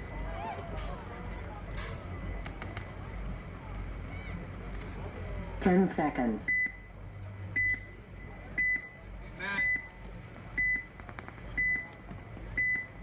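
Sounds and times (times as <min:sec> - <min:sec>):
countdown timer beeping: 0:08.6 - 0:09.0.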